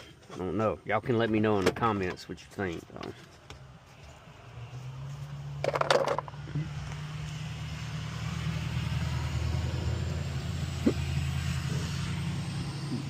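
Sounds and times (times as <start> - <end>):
vehicle engine humming: 2.6 - 13.0.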